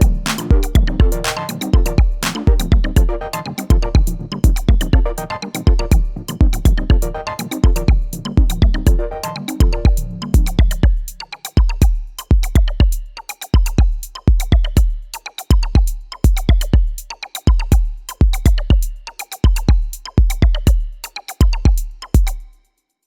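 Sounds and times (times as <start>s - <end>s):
electronic drum machine beat: 0.0s - 22.5s.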